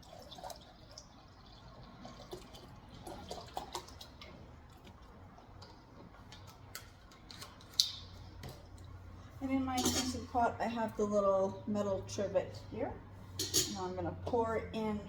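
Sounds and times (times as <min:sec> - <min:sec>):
liquid trickling into a cup: 0:00.0 - 0:05.2.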